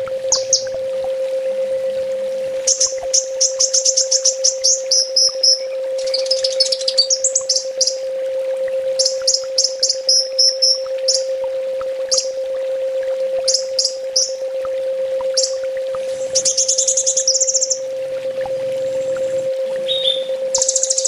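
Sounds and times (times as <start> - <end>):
steady low hum: 0.0 - 21.0
bird chirping and trilling: 0.3 - 0.8, 2.7 - 8.0, 9.0 - 11.3, 12.1 - 12.4, 13.5 - 14.4, 15.4 - 17.9, 19.8 - 21.0.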